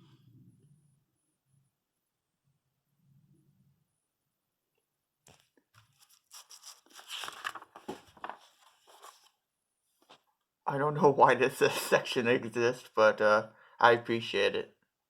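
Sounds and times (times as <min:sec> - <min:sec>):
paper pages rustling: 0:05.3 - 0:09.4, 0:10.0 - 0:10.3.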